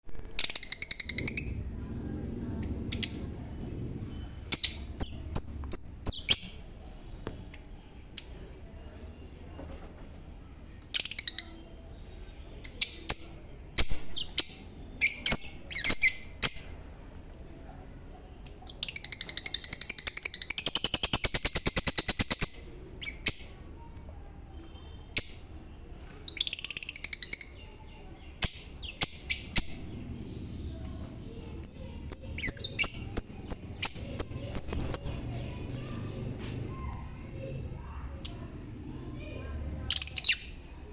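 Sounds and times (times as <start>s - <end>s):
lovebirds chirping: 25.2s - 38.6s.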